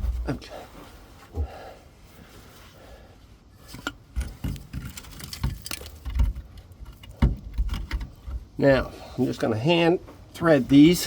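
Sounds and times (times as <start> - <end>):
metal clicks and knocks: 3.7 - 8.6.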